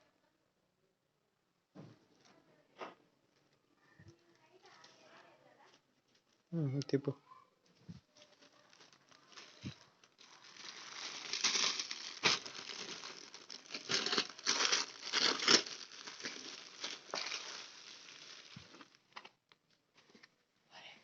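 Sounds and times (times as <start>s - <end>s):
packaging crinkling and rustling: 4.3s - 6.5s, 8.0s - 19.4s.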